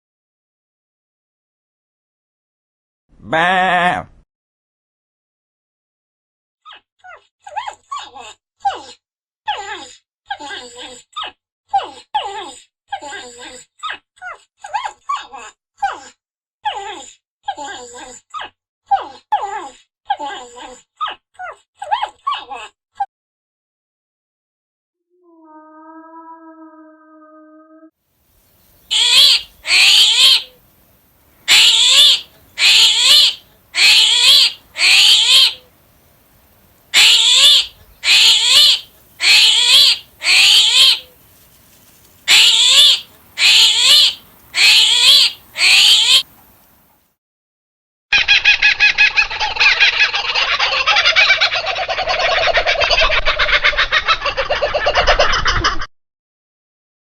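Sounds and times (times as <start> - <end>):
chorus of many birds: 28.5 - 46.8
bird calling loudly: 28.6 - 46.8.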